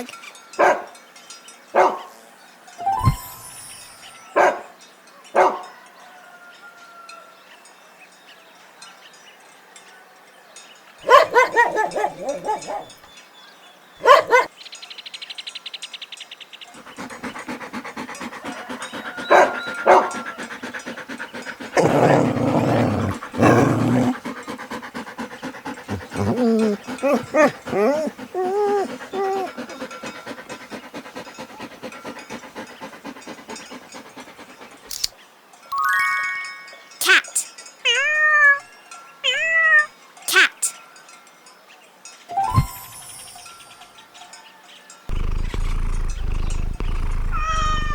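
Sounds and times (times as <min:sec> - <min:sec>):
dog barking: 0:00.6 - 0:00.9, 0:01.8 - 0:02.1, 0:04.4 - 0:04.7, 0:05.4 - 0:05.7, 0:11.0 - 0:13.0, 0:14.0 - 0:14.5, 0:16.8 - 0:32.7
dog breathing: 0:11.0 - 0:13.0, 0:14.0 - 0:14.5, 0:16.8 - 0:35.1, 0:45.1 - 0:47.9
dog whining: 0:11.0 - 0:13.0, 0:14.0 - 0:14.5, 0:16.8 - 0:35.0, 0:45.1 - 0:47.9.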